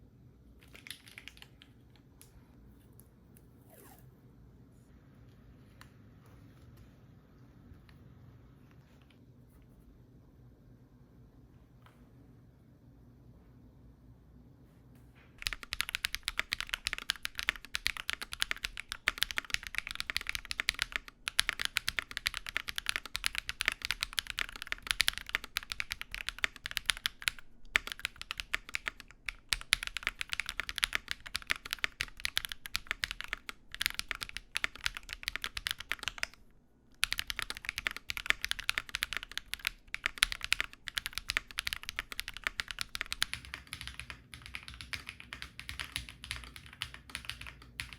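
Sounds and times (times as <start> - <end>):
mechanical keyboard typing: 0.6 - 1.7, 15.4 - 36.4, 37.0 - 47.9.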